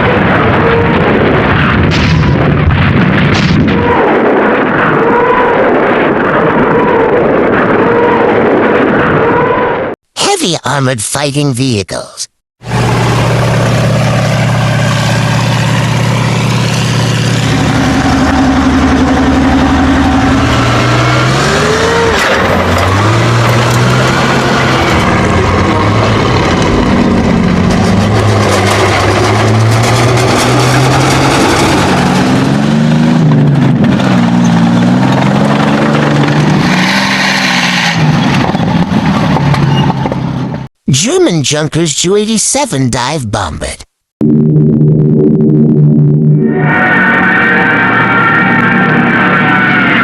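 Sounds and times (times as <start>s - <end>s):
heavy vehicle engines revving: 12.6s - 40.7s, 44.2s - 50.0s.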